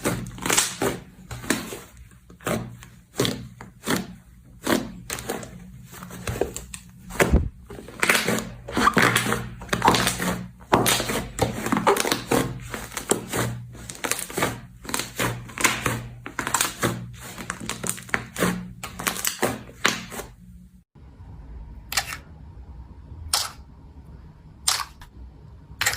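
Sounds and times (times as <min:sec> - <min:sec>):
slime crackling and popping: 0:00.0 - 0:01.8, 0:07.8 - 0:20.1.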